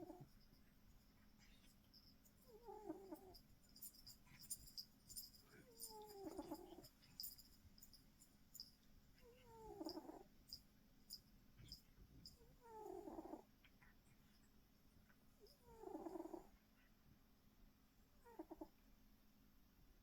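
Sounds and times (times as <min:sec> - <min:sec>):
faint squeaky snoring: 0:02.4 - 0:03.4, 0:05.6 - 0:06.9, 0:09.2 - 0:10.3, 0:11.6 - 0:13.5, 0:15.4 - 0:16.6, 0:18.2 - 0:18.8.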